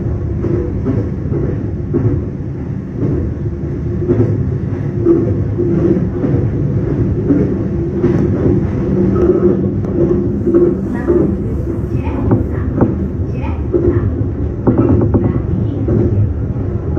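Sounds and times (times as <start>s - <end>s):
faint clicks from rails: 0.0s - 16.9s
train rumble inside carriage: 0.0s - 16.9s.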